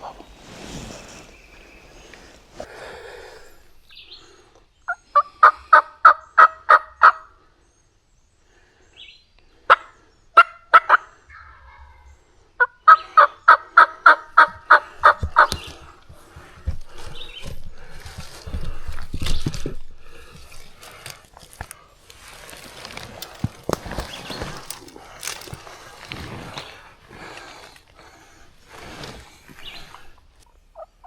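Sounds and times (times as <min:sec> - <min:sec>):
turkey calling: 0:04.9 - 0:07.3, 0:09.7 - 0:16.0, 0:29.6 - 0:31.0.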